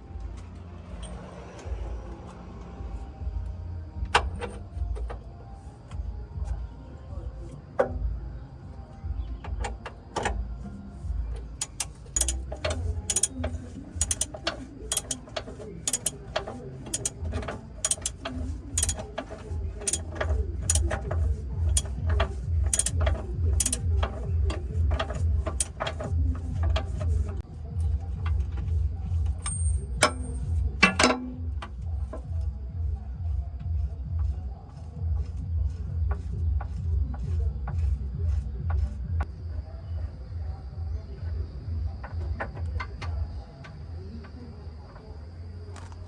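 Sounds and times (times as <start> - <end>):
low pulsing rumble: 0.0 - 45.7
metallic clicks of hand tools: 11.6 - 21.1, 21.7 - 24.2.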